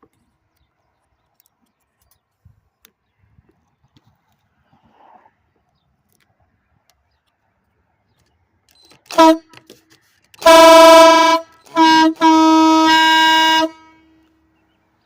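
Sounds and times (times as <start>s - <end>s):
air horn blasts: 9.1s - 9.6s, 10.4s - 14.3s.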